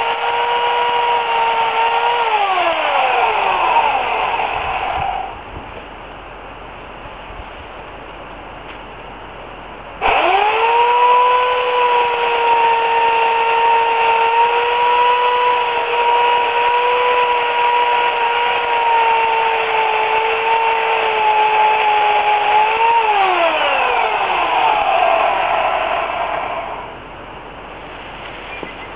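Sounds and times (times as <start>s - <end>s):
electric chainsaw running: 0.0s - 5.3s, 10.0s - 26.9s.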